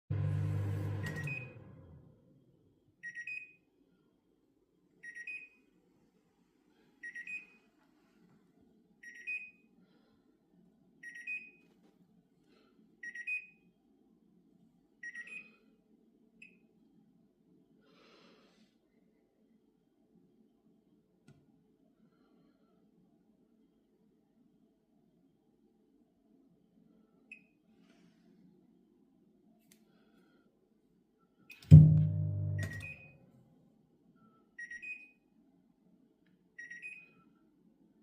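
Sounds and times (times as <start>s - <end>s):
low hum: 0.0s - 2.5s, 31.6s - 33.2s
microwave high double beep: 0.1s - 2.0s, 31.6s - 33.2s.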